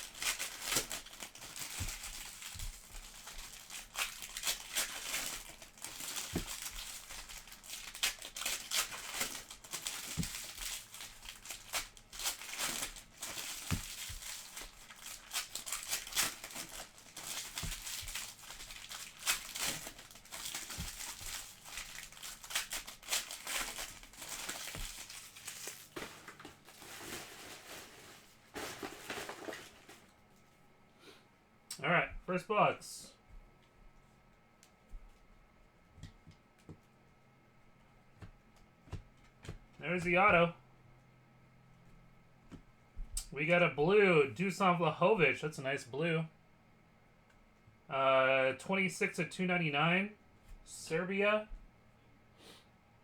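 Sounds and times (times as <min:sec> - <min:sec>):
plastic wrapping crinkling: 0:00.0 - 0:30.5.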